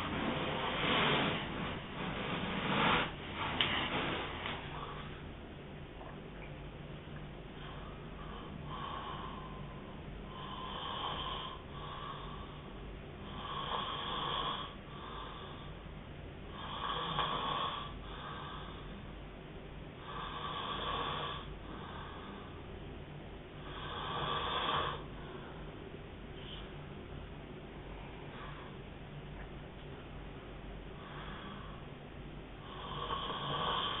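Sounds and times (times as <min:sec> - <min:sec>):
man snoring: 0:08.2 - 0:09.6, 0:10.3 - 0:12.5, 0:13.3 - 0:15.6, 0:16.5 - 0:18.8, 0:20.0 - 0:22.3, 0:23.6 - 0:25.1, 0:32.6 - 0:34.0.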